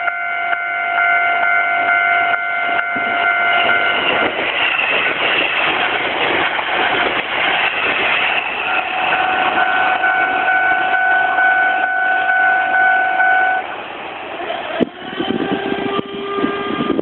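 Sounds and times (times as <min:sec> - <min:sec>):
two-tone crossing bell: 0:00.0 - 0:04.3
passing electric train: 0:00.0 - 0:17.0.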